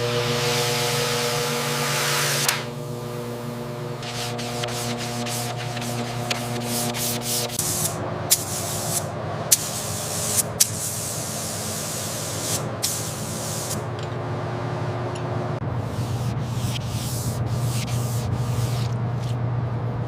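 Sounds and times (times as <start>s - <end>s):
low steady hum: 2.6s - 20.0s
hissing spray: 4.0s - 13.8s.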